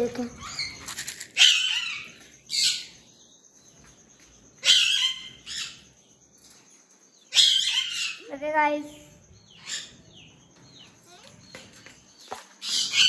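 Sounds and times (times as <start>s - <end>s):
parrots screeching: 0.3s - 3.0s, 4.6s - 5.8s, 7.3s - 8.3s, 9.5s - 10.0s, 12.6s - 13.0s.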